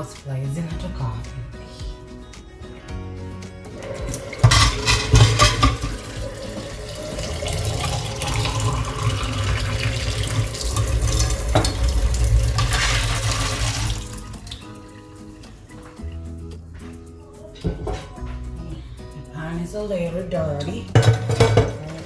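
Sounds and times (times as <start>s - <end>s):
pan clattering against sink: 3.8s - 14.6s, 17.6s - 18.4s, 20.5s - 22.0s
tap running into a sink: 3.8s - 14.7s.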